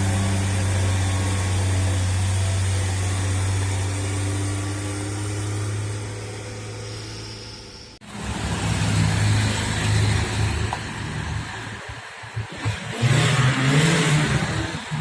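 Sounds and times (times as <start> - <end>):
rising hiss: 0.0 - 9.9
heavy diesel engine climbing: 0.0 - 15.0.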